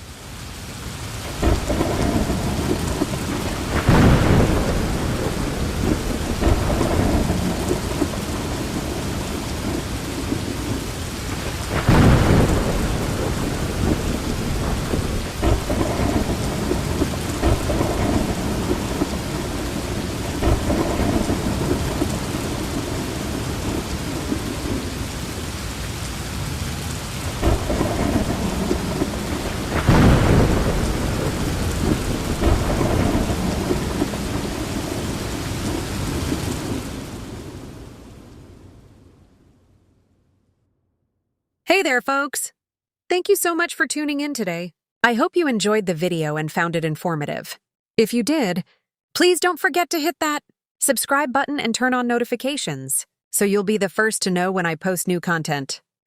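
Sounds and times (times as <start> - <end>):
heavy rain pouring: 0.0 - 39.2
thunder cracks: 1.2 - 39.2.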